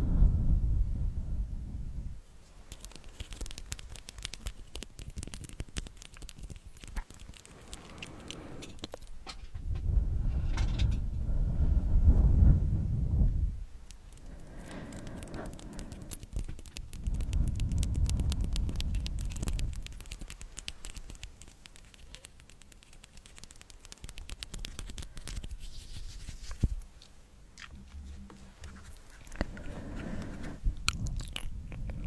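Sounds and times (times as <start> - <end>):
fine crackling clicks: 2.6 - 9.5, 13.8 - 25.8.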